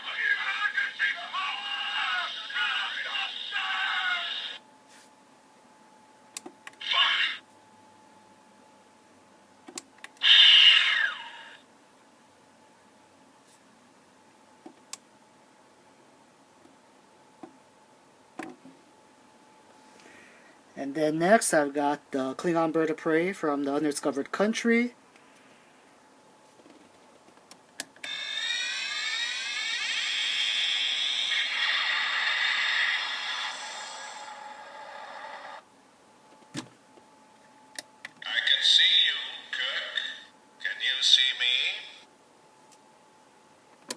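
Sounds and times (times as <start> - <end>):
electronic tones sweeping downward: 28.1 - 35.6.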